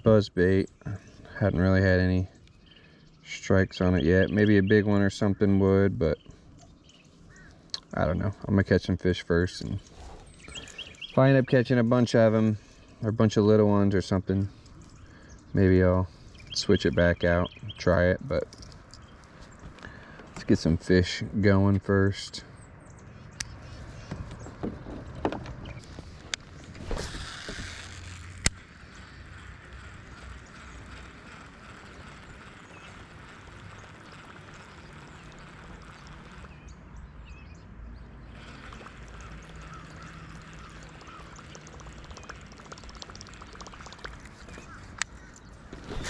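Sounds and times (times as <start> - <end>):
water and wind noise: 24.1 - 30.0
fishing tackle clicks: 25.8 - 36.5, 38.4 - 46.0.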